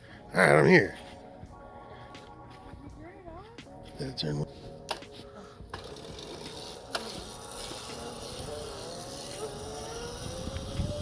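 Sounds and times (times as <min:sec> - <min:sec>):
electric motor whining: 0:05.7 - 0:11.0.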